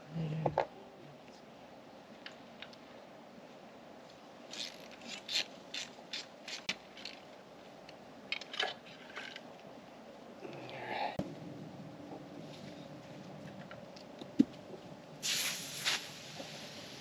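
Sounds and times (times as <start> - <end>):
spray bottle hissing squirts: 15.2 - 17.0.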